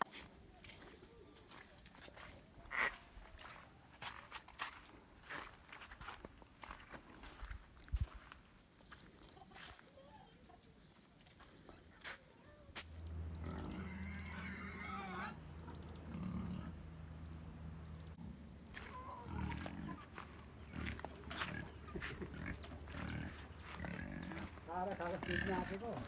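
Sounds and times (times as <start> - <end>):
pig squealing: 13.4 - 15.4.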